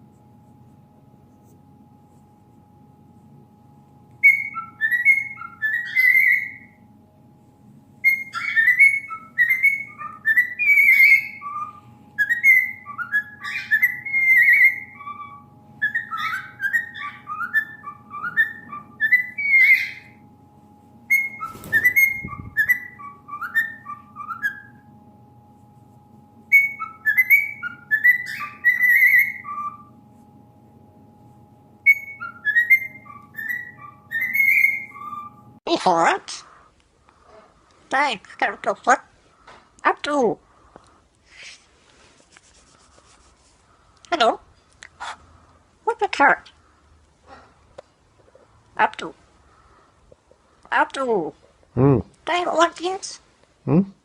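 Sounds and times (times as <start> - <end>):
faint steady hum: 0.0 - 54.0
bird whistling chirpy notes: 4.2 - 6.8, 8.0 - 20.2, 21.1 - 24.8, 26.5 - 29.9, 31.8 - 35.4.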